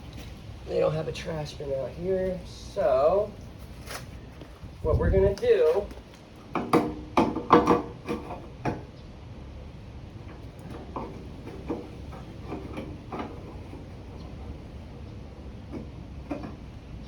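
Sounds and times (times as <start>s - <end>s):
equipment clunks and knocks: 6.5s - 8.9s.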